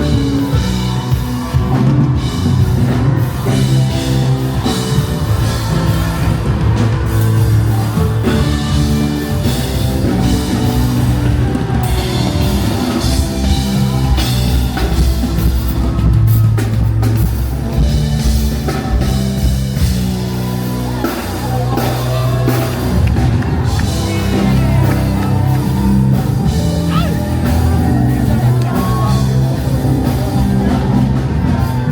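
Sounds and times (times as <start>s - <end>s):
live rock band playing: 0.0s - 31.9s.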